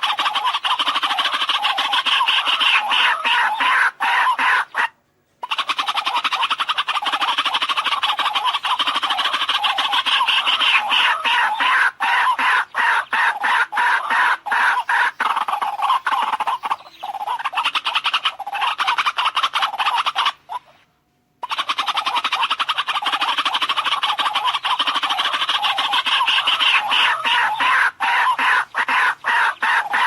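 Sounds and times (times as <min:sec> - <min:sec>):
waterhen calling: 0:00.0 - 0:30.0.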